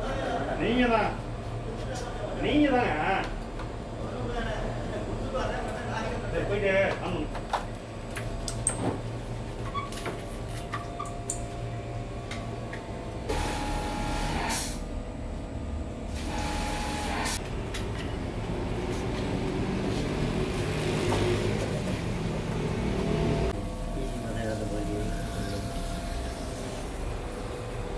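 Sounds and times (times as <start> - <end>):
pressure washer motor humming: 13.3 - 14.8, 16.1 - 17.4.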